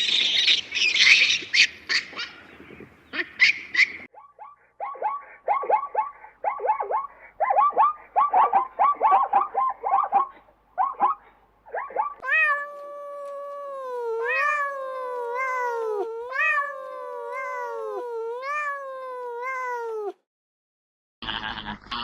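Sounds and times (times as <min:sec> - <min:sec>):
cat chirping calls: 0:11.8 - 0:20.2
cat meowing wail: 0:12.2 - 0:20.2.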